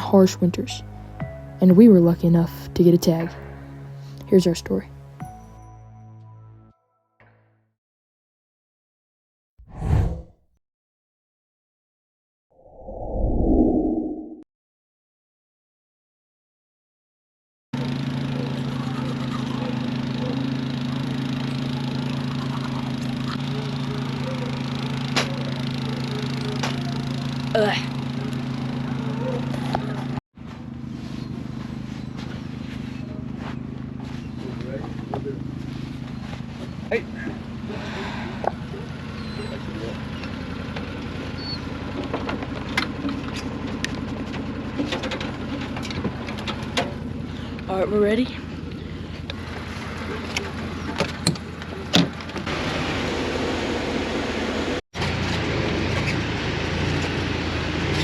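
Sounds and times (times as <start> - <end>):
utility vehicle engine running: 17.8 - 58.0.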